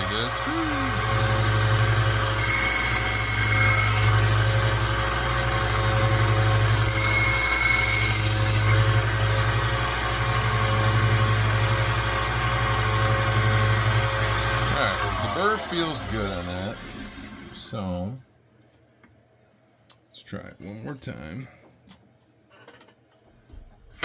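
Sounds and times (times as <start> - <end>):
belt sander motor hum: 0.0 - 17.6.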